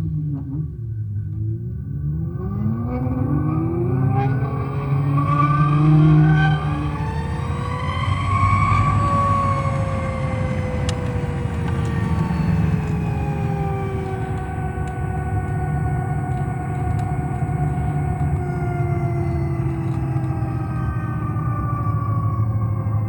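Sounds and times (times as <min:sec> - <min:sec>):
electric motor whining: 0:02.6 - 0:23.0
steady low rumble: 0:09.0 - 0:23.0.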